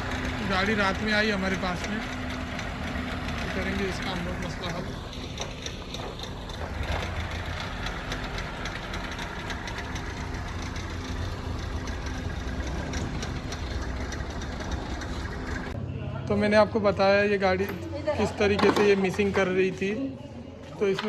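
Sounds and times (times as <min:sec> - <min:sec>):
car engine idling roughly: 0:00.0 - 0:15.8
rapid steady ticking: 0:00.0 - 0:15.8.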